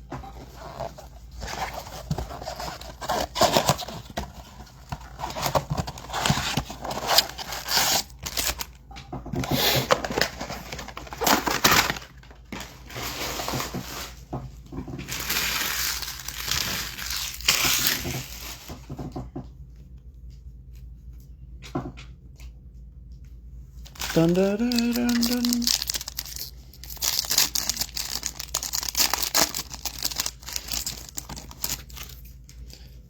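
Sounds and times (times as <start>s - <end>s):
wrappers crinkling and tearing: 0.5s - 8.8s, 9.4s - 14.2s, 15.0s - 18.8s, 23.8s - 32.8s.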